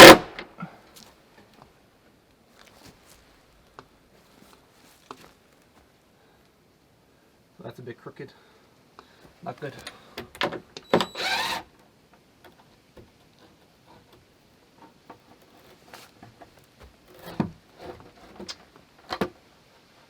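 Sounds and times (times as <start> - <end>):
light wooden knocks and clicks: 11.8 - 19.5
wooden planks scraping: 13.2 - 19.4.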